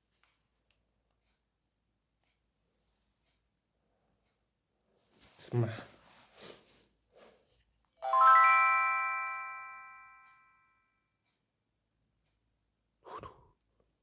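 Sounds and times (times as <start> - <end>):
phone chime of bell-like notes: 8.0 - 10.8.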